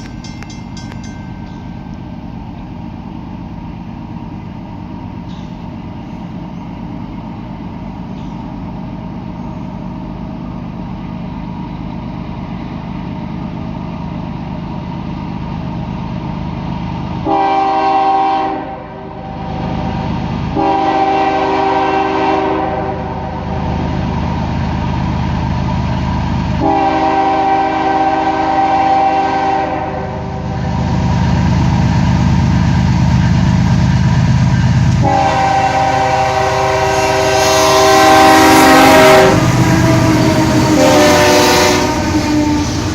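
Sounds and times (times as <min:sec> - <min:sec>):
diesel locomotive rumble: 0:00.0 - 0:42.9
rail rumble: 0:00.0 - 0:42.9
train air horn blasts: 0:17.2 - 0:19.6, 0:20.6 - 0:23.5, 0:26.6 - 0:30.7, 0:35.0 - 0:42.9.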